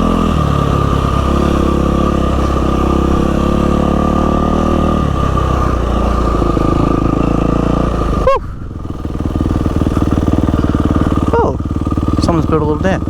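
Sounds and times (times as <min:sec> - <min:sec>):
dirt bike engine running: 0:00.0 - 0:13.0.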